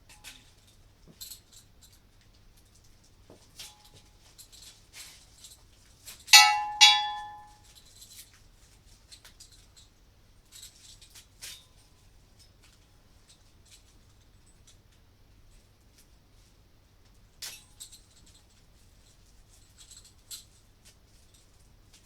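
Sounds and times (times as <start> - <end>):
metal axle stands clanking: 6.4 - 7.5.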